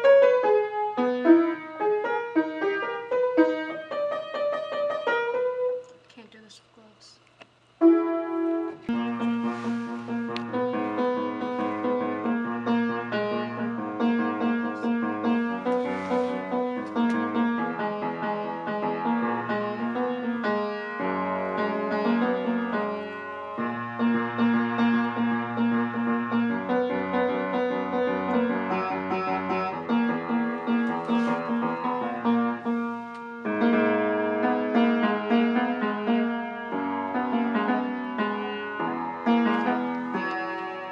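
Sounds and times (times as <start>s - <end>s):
piano keyboard piece: 0.0s - 6.0s, 7.8s - 40.9s.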